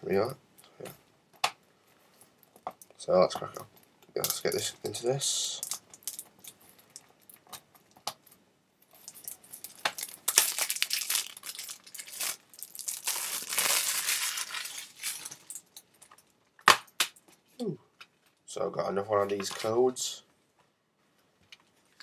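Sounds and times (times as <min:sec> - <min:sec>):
plastic wrap crinkling: 0:05.6 - 0:08.3, 0:08.9 - 0:17.5.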